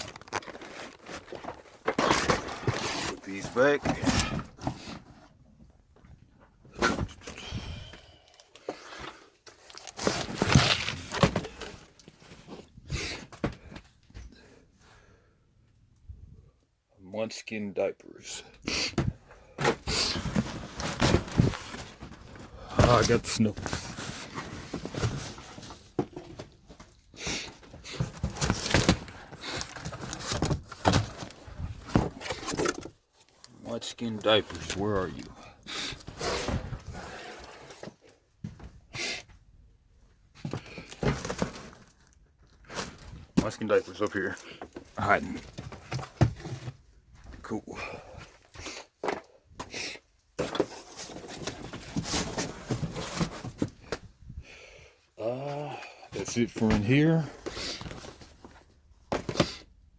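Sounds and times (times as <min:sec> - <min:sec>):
crinkles and rustles: 0:00.0 - 0:07.4, 0:08.3 - 0:14.3, 0:19.6 - 0:38.8, 0:40.2 - 0:47.6, 0:50.3 - 0:54.3.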